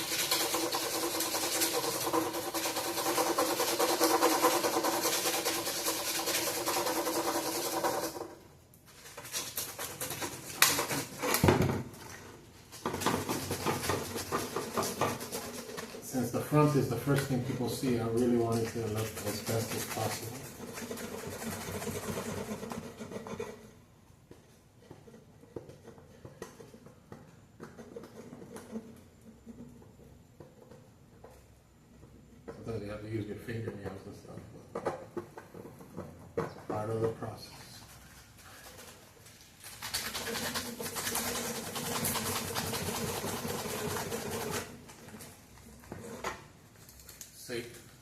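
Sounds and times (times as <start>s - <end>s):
sandpaper rubbing: 0.0s - 11.4s, 12.7s - 23.6s, 37.8s - 44.9s
scattered scrapes and clicks: 0.0s - 11.4s, 12.0s - 23.8s, 37.6s - 47.4s.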